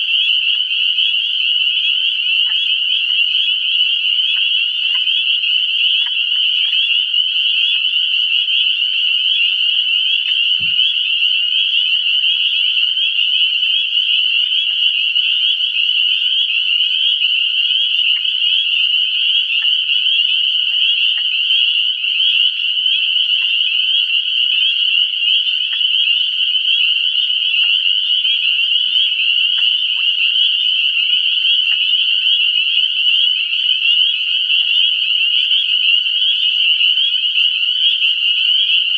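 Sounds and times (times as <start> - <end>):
chorus of frogs trilling: 0.0 - 38.9.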